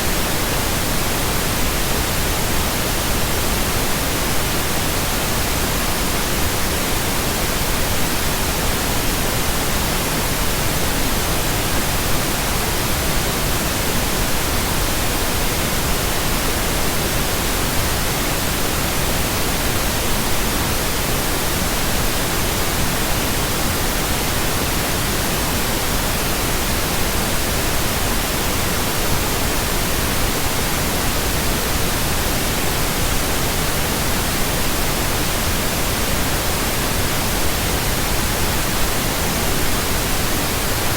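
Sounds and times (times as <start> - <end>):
pink noise hiss: 0.0 - 40.9.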